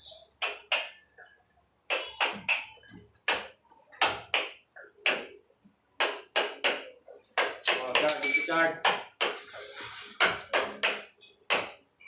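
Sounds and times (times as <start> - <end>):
hammer strikes ringing: 6.0 - 9.4.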